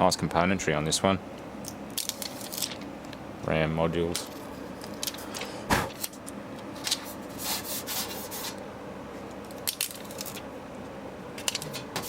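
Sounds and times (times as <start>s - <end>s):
motherboard rubbing and rustling: 4.2s - 8.6s.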